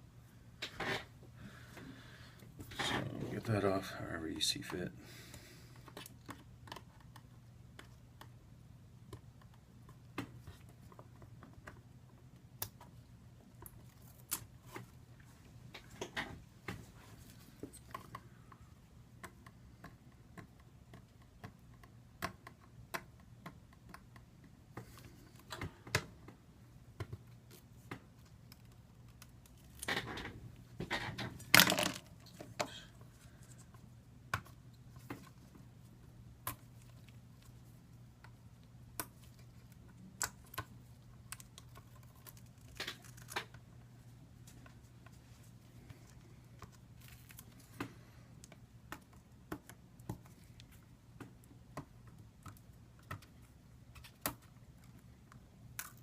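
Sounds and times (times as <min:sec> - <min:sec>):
small clicks and taps: 0:19.2 - 0:26.4.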